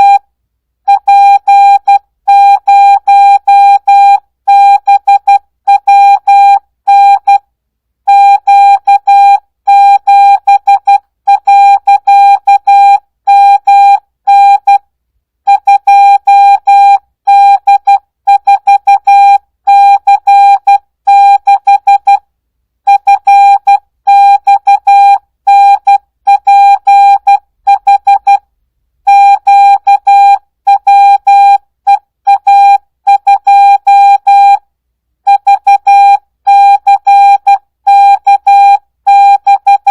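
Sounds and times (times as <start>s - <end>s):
morse code beeps: 22.9s - 28.4s, 29.1s - 34.6s, 35.3s - 39.9s.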